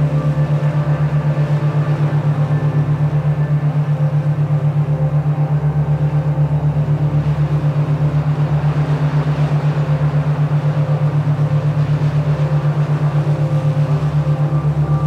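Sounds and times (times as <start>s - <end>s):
low pulsing hum: 0.0s - 15.0s
steady droning tones: 0.0s - 15.0s.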